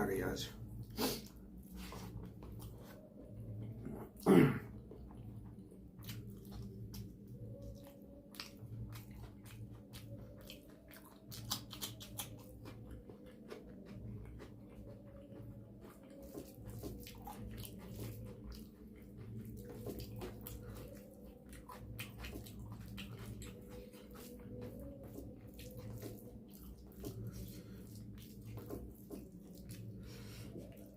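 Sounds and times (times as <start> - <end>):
chewing soft food: 0.2 - 30.9
wet mouth clicks and smacks: 6.0 - 12.8.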